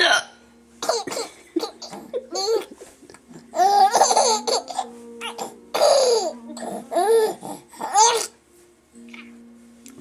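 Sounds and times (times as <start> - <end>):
baby laughing: 0.8 - 2.9, 3.5 - 8.4.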